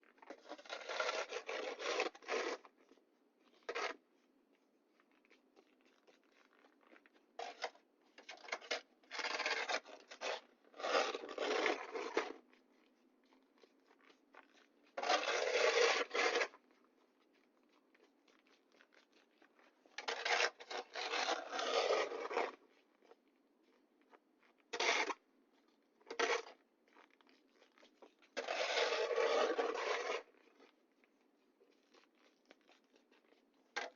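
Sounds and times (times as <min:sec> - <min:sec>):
snow shovel scraping pavement: 0:00.3 - 0:02.7, 0:03.7 - 0:04.0, 0:07.4 - 0:12.4, 0:15.0 - 0:16.6, 0:20.0 - 0:22.6, 0:24.7 - 0:25.2, 0:26.1 - 0:26.5, 0:28.4 - 0:30.3.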